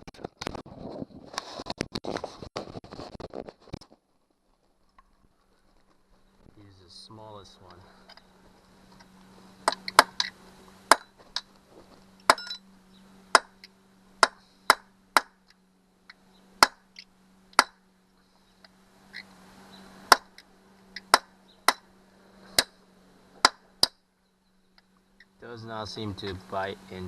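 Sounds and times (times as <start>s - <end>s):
hammer tapping steel punch: 17.5s - 17.8s.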